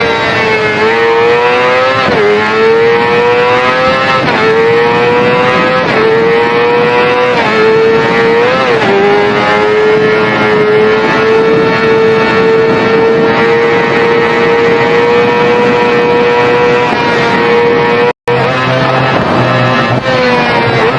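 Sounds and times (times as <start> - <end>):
motorcycle engine accelerating: 0.0 - 20.9.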